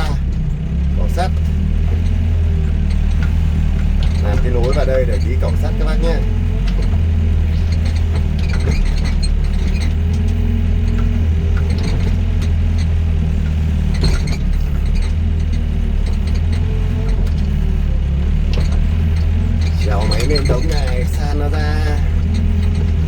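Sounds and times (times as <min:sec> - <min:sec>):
excavator diesel engine droning: 0:00.0 - 0:23.0.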